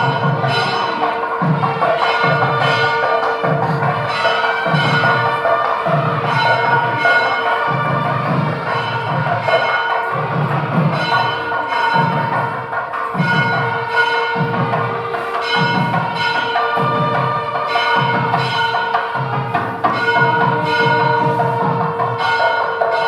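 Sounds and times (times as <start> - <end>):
music with ringing bells: 0.0 - 23.0.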